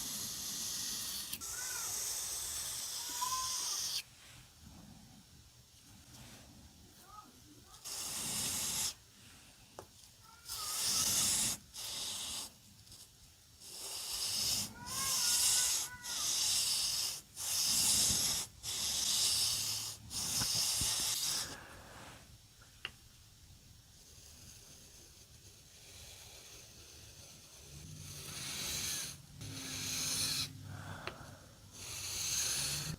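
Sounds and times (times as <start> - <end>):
knife rasping on a whetstone: 13.6 - 21.6, 24.1 - 30.6, 31.8 - 32.9.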